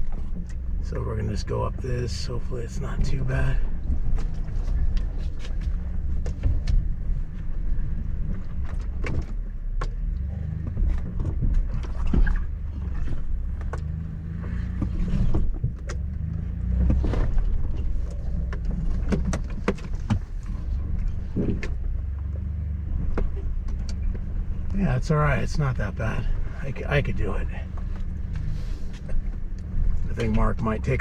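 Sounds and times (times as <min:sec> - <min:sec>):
vehicle engine running low: 0:00.0 - 0:31.0.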